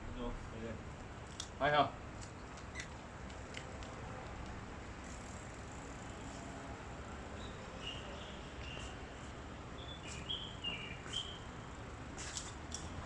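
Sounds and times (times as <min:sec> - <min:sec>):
steady background noise: 0:00.0 - 0:13.0
bird chirping: 0:07.4 - 0:08.9, 0:09.8 - 0:11.5.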